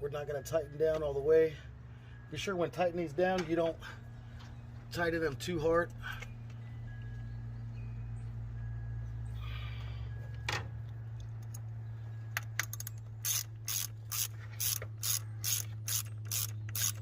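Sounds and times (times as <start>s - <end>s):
steady low hum: 0.0s - 17.0s
socket ratchet clicking: 12.5s - 17.0s.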